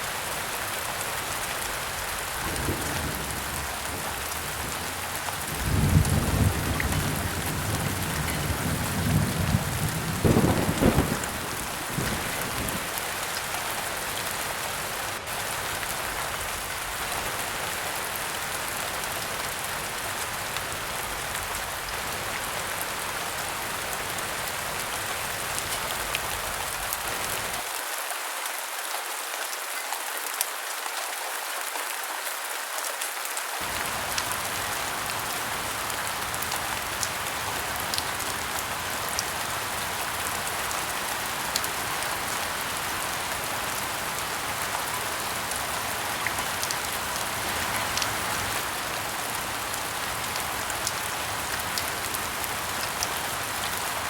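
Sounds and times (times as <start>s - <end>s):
rain falling: 0.0s - 54.0s
rain drop ticks: 33.6s - 39.3s, 46.2s - 48.2s.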